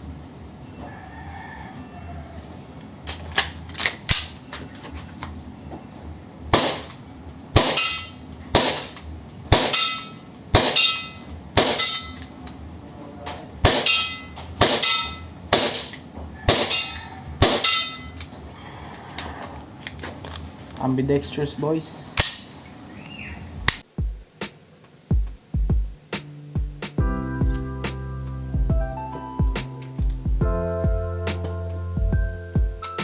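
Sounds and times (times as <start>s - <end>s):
airsoft pistol shots: 6.5s - 12.2s, 13.6s - 18.1s.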